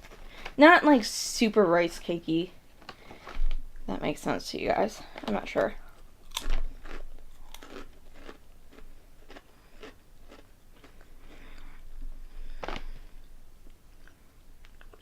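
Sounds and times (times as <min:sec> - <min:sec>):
crunching crisp snack chips: 0:06.2 - 0:11.7.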